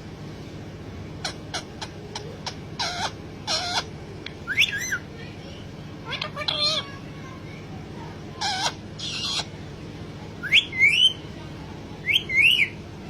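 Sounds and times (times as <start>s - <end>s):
parrot calling: 1.2s - 5.1s, 6.0s - 7.1s, 8.4s - 9.6s, 10.4s - 11.3s, 12.0s - 12.8s.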